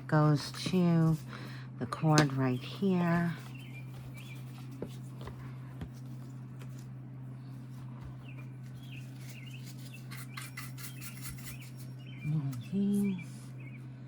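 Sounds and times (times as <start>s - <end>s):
steady low hum: 0.0s - 14.0s
bird chirps: 3.5s - 4.5s, 8.2s - 13.8s.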